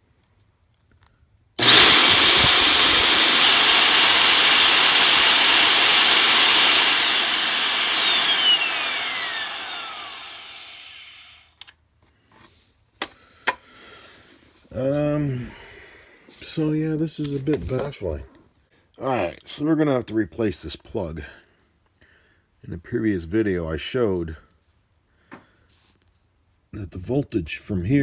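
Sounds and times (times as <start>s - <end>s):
vacuum cleaner motor whining: 1.6s - 11.4s.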